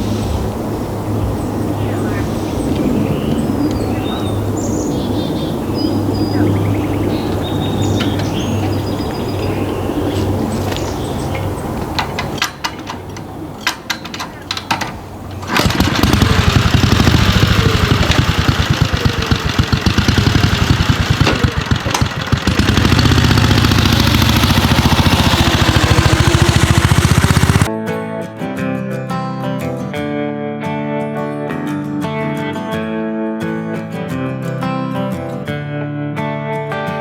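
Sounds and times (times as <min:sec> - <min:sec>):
small engine running: 0:06.0 - 0:27.7
sharp clicks: 0:10.7 - 0:27.7.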